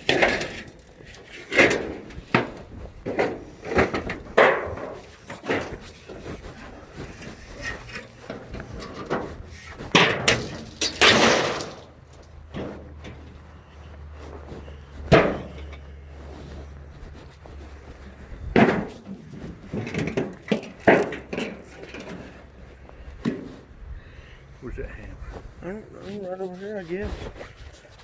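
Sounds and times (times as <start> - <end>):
boards knocking and banging: 1.4 - 13.3, 15.1 - 15.7, 18.5 - 22.4
rattling crash: 6.6 - 13.3.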